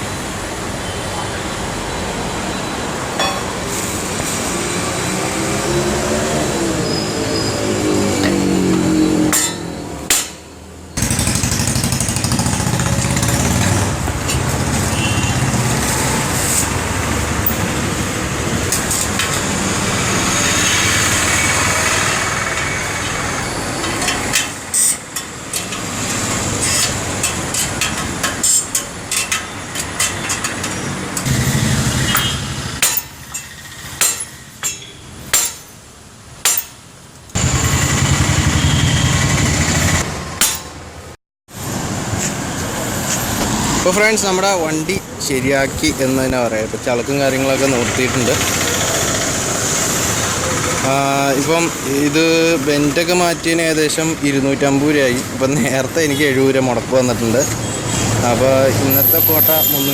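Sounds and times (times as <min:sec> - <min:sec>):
sharp metal knocks and clinks: 0:03.2 - 0:03.7, 0:09.3 - 0:10.5, 0:32.1 - 0:35.8, 0:36.4 - 0:36.8.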